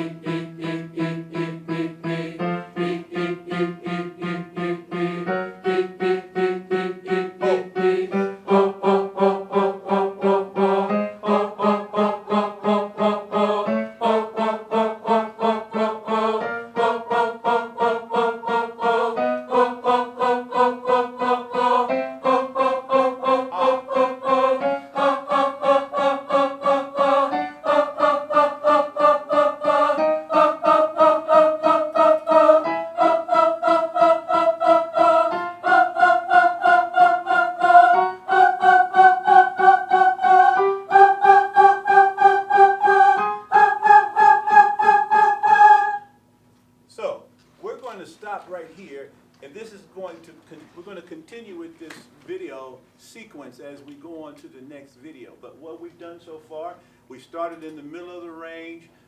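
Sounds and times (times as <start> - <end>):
choir singing short detached pulses: 0.0 - 46.1.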